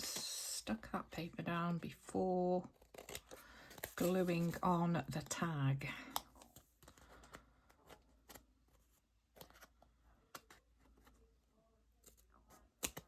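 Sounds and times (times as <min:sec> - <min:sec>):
paper rustling: 0:02.8 - 0:05.2.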